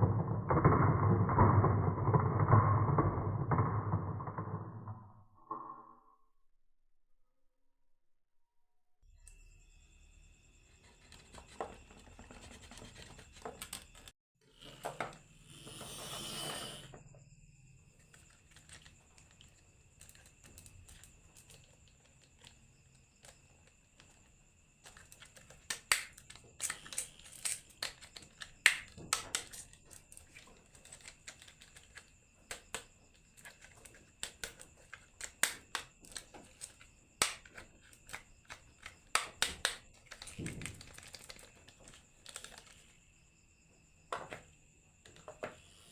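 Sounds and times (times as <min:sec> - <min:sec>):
marbles clacking on wood: 0:00.0 - 0:05.9
marbles rolling down wooden run: 0:00.0 - 0:05.9.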